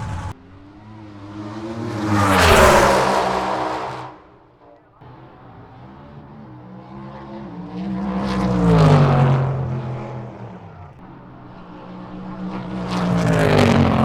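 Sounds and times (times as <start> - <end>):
race car passing at speed: 0.0 - 14.0.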